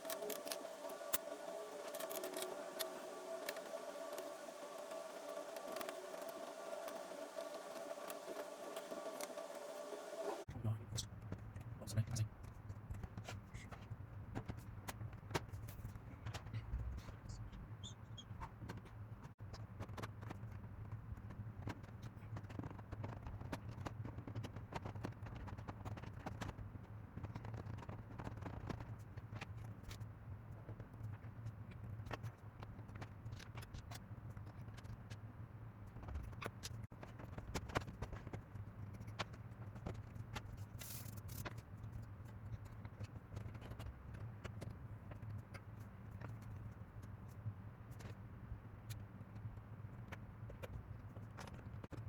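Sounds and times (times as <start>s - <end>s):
steady low hum: 0.0s - 14.9s.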